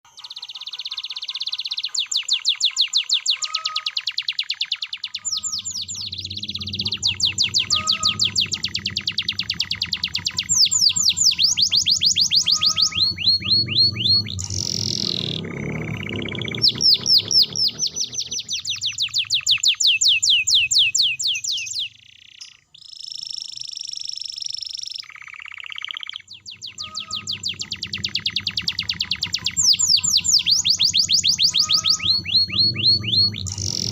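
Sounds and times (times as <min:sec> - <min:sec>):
canary singing trills: 0:00.0 - 0:33.9
low hum: 0:05.2 - 0:19.3, 0:26.2 - 0:33.9.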